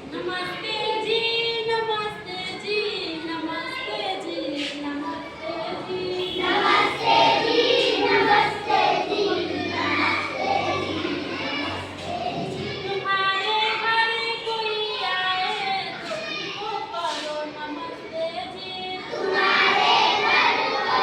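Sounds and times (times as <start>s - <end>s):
children singing: 5.4s - 13.8s, 19.0s - 21.0s.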